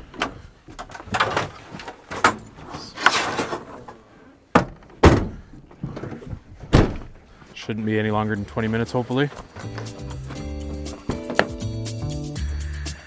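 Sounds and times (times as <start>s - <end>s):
sharp knocks and clunks: 0.0s - 7.3s, 9.4s - 11.7s
rustling handling noise: 0.0s - 11.7s.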